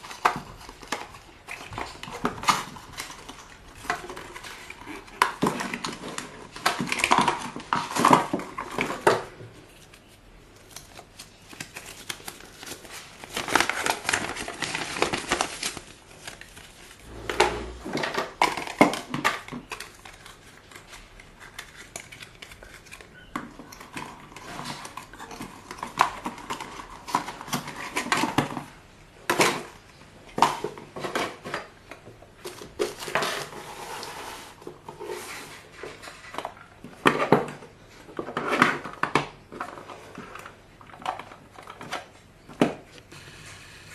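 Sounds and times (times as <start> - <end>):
plastic objects clicking and knocking: 0.0 - 9.6, 18.0 - 33.6.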